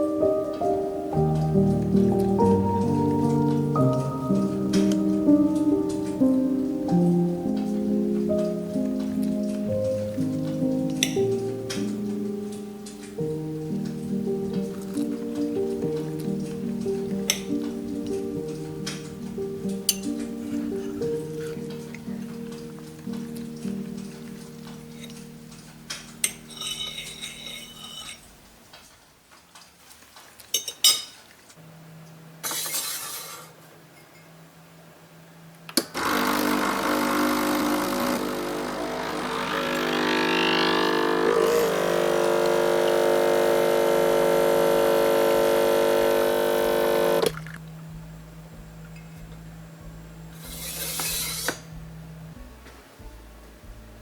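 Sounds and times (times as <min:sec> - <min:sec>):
dishes clinking: 0:25.9 - 0:28.3, 0:30.5 - 0:31.3
electric kitchen appliance running: 0:36.0 - 0:47.3.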